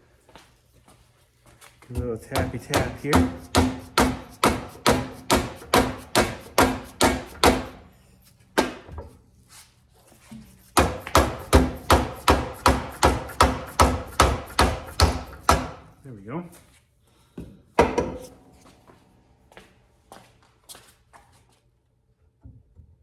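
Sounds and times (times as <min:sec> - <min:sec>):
hammer tapping on metal: 0:02.3 - 0:07.7, 0:10.8 - 0:15.9.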